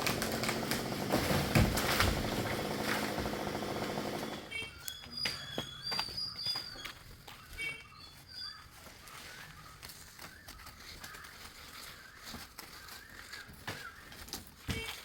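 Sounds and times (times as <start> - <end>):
bird calls: 4.3 - 15.0.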